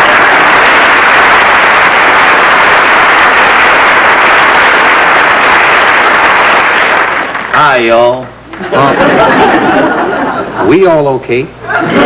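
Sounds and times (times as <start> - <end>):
audience applauding: 0.0 - 7.8.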